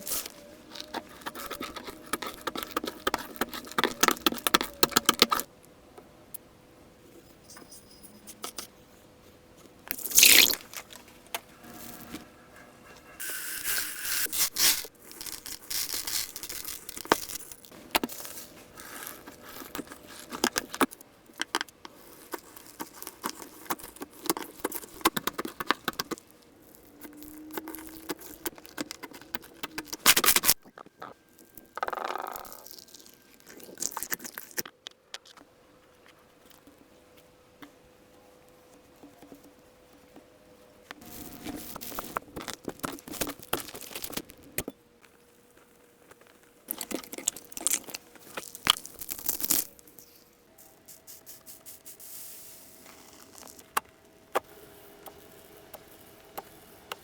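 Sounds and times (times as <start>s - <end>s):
slime scraping and crackling: 0.0s - 5.5s, 9.9s - 11.1s, 12.9s - 35.4s, 41.0s - 44.6s, 45.6s - 50.2s, 52.7s - 57.0s.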